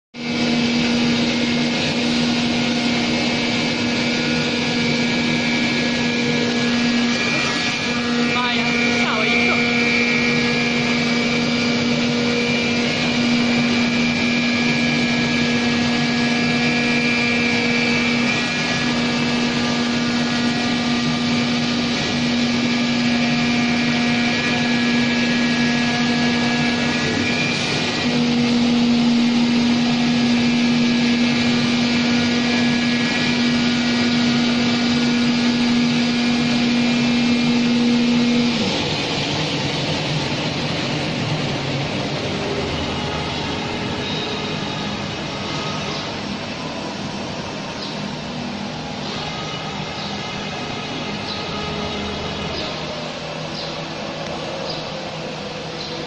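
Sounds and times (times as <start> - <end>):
cutting machine humming: 0.2 - 56.0.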